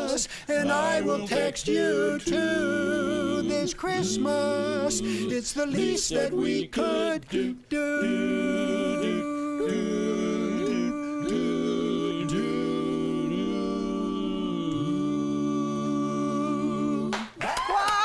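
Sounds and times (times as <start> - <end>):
male quartet singing in harmony: 0.0 - 17.2.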